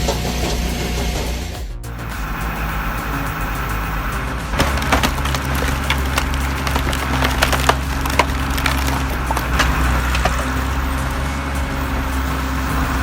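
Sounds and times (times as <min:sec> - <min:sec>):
logs cracking and splintering: 0:04.1 - 0:13.0.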